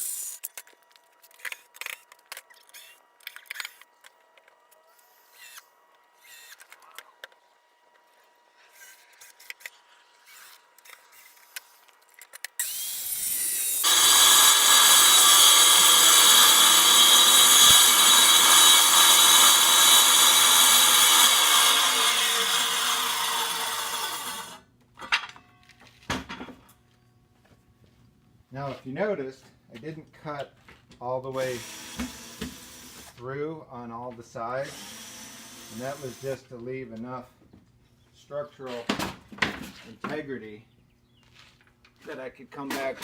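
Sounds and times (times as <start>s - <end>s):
circular saw cutting wood: 4.8s - 11.9s, 12.6s - 24.6s, 31.4s - 33.2s, 34.6s - 36.6s
circular saw whining: 12.6s - 24.6s.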